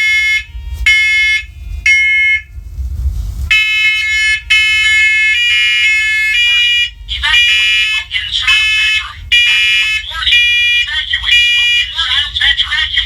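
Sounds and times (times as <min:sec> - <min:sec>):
smoke alarms beeping: 0:03.5 - 0:13.0.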